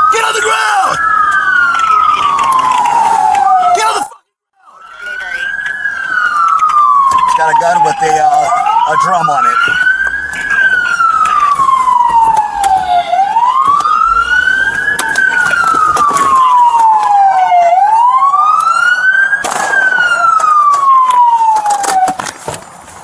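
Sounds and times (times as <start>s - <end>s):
police siren wailing: 0.0s - 22.3s
sharp crack: 18.5s - 22.7s.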